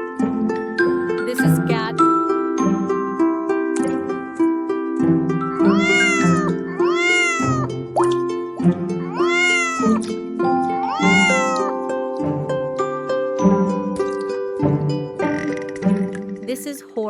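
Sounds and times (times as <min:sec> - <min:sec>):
light background music: 0:00.2 - 0:17.0
cat meowing: 0:05.5 - 0:07.7, 0:09.0 - 0:10.1, 0:10.7 - 0:11.8.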